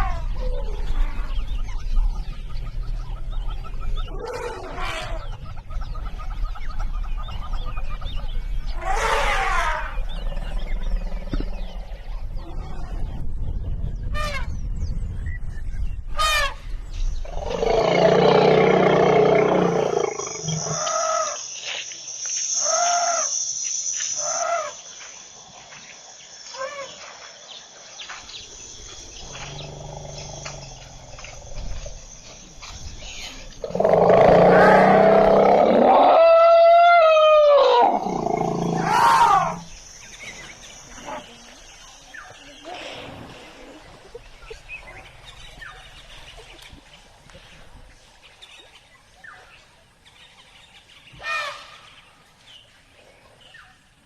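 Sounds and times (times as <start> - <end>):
elephants trumpeting: 33.6 - 39.7.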